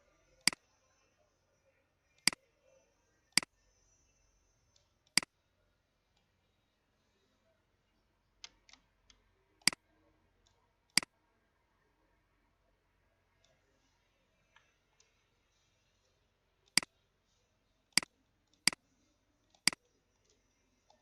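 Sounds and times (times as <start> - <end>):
computer mouse clicking: 19.5 - 21.0.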